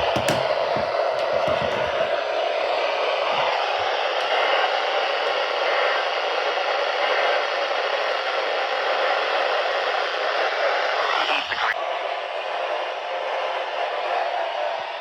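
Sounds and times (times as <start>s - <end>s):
radio static hiss: 8.9s - 11.8s.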